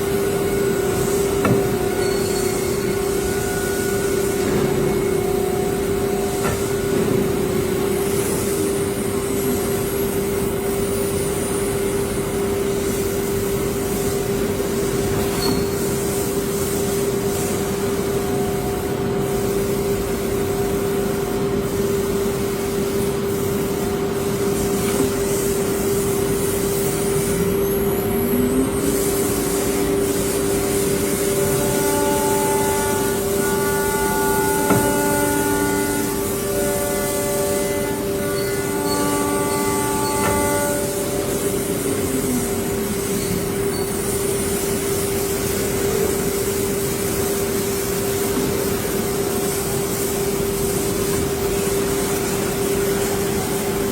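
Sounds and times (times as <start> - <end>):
cnc router spindle whine: 0.0 - 13.8, 17.8 - 46.8
low machine tone: 0.0 - 44.8.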